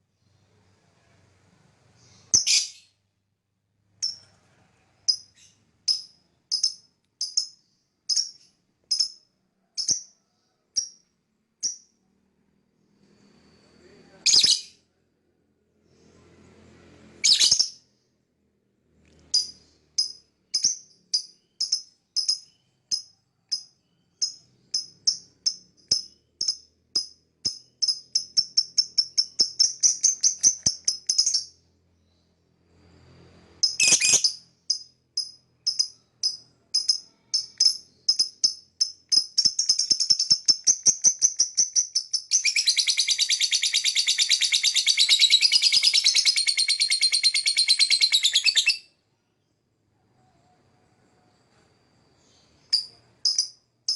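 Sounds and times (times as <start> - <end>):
lovebird chirping and chattering: 2.0 - 3.0, 4.0 - 4.3, 5.0 - 11.0, 11.6 - 11.9, 14.3 - 14.8, 17.2 - 17.9, 19.3 - 32.2, 33.6 - 49.0, 52.2 - 53.9.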